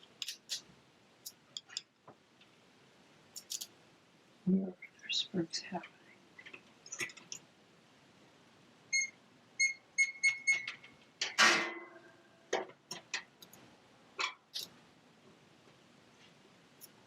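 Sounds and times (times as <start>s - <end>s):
short electronic beeps: 8.9s - 10.7s.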